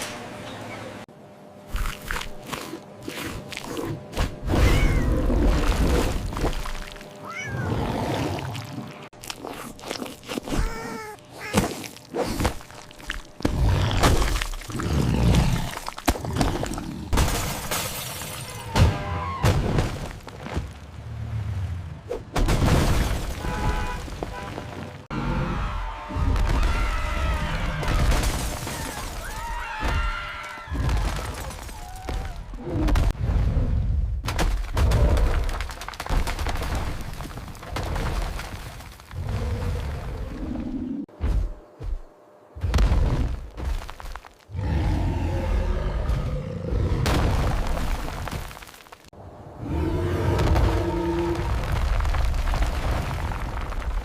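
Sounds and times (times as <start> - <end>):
crunching chewing sounds: 1.7 - 4.4, 8.2 - 17.1
pitched cry: 10.5 - 11.7
crashing and shattering: 27.8 - 30.0, 30.8 - 32.4, 47.1 - 49.1.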